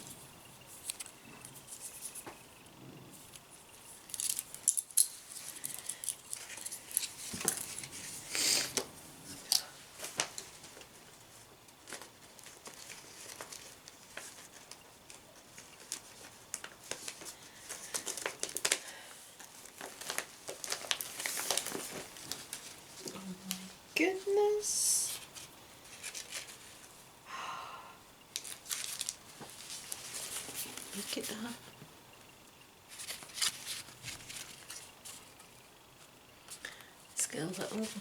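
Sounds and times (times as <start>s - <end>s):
paper and plastic crinkling: 9.5s - 24.4s, 25.1s - 27.0s, 28.4s - 31.6s, 32.9s - 36.6s.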